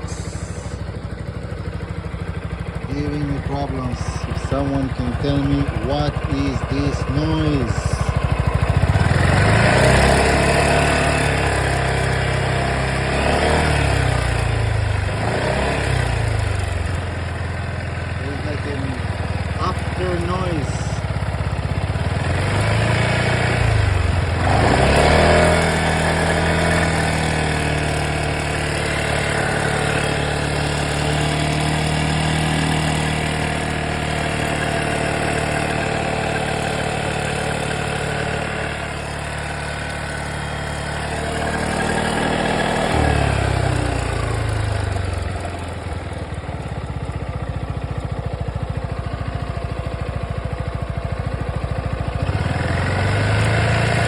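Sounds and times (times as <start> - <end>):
scooter engine idling and revving: 0.0 - 54.0.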